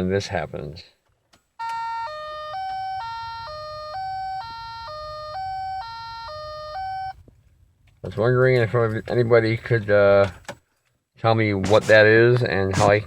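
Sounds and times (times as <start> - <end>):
car warning chime beeping: 1.6 - 7.2
low steady hum: 1.6 - 10.5.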